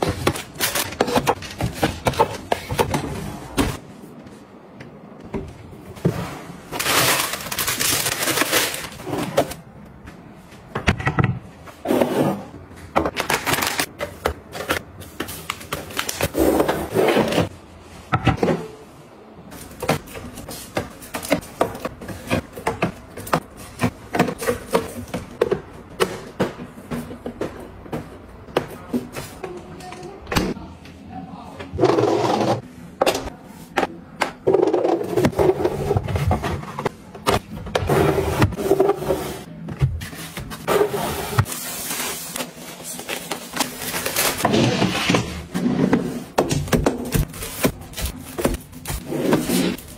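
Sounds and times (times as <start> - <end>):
items clicking and knocking: 0.0 - 3.8, 19.5 - 30.5, 31.8 - 49.9
packaging rustling: 6.8 - 9.3.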